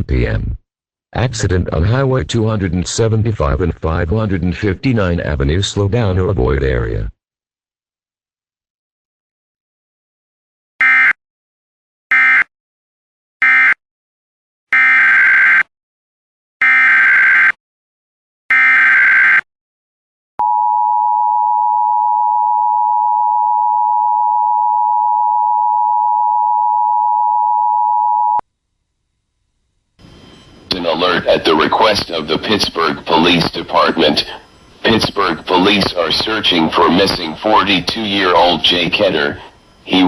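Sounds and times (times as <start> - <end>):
screechy data noise bursts: 30.0 - 40.0.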